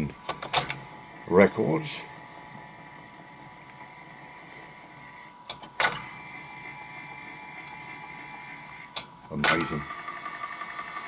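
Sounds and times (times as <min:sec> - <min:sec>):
turntable motor whine: 0:09.6 - 0:11.0.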